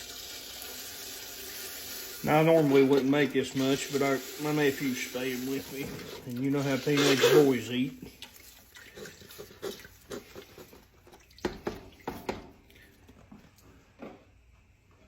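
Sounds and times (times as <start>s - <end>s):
liquid sloshing in a pot: 2.2s - 13.2s.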